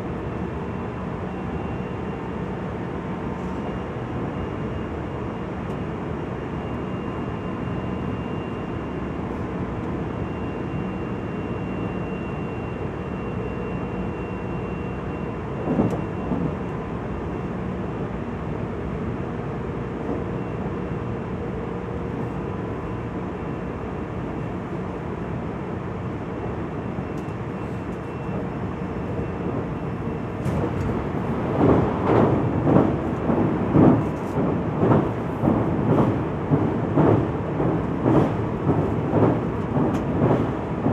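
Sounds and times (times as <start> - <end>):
train interior rumble: 13.8 - 40.9.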